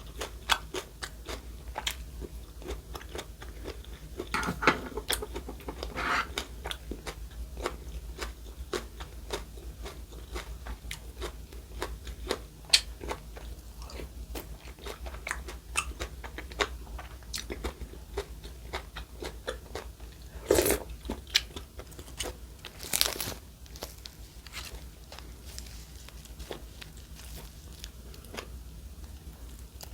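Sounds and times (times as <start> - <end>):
crunchy chewing and biting: 5.0 - 28.6.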